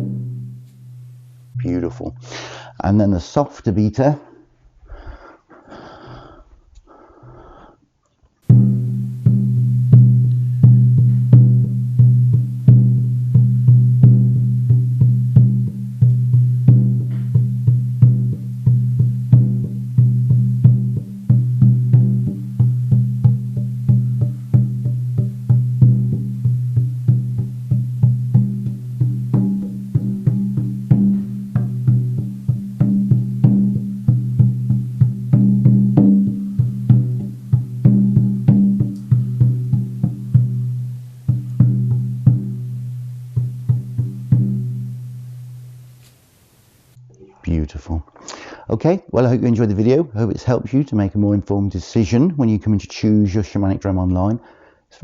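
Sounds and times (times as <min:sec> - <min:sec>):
frame drum beaten steadily: 0:00.0 - 0:01.9, 0:08.5 - 0:46.0.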